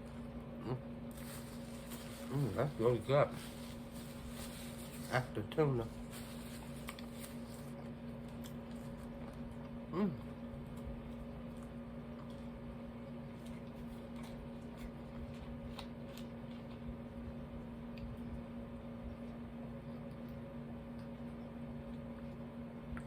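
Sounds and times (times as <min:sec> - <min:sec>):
soft chewing: 0:00.0 - 0:23.0
steady low hum: 0:00.0 - 0:23.0
person humming mm: 0:00.6 - 0:00.9, 0:09.9 - 0:10.3.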